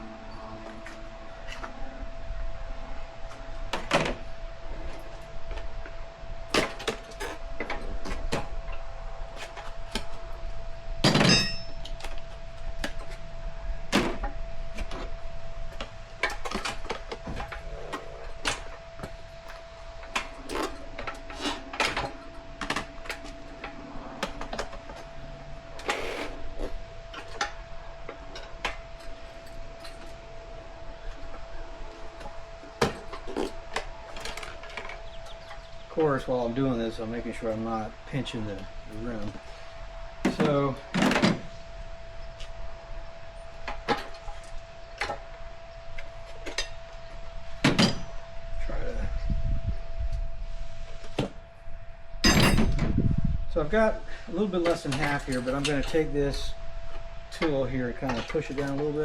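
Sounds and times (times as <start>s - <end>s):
faint steady hum: 0.0s - 59.0s
tire irons clicking and scraping: 2.6s - 41.6s.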